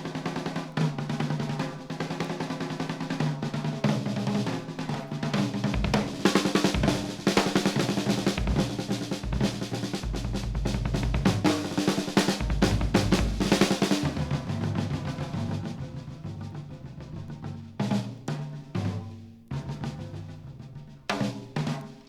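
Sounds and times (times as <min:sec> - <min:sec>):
jazz drum kit playing fast: 0:00.0 - 0:22.0
bass drum hits: 0:12.4 - 0:13.6.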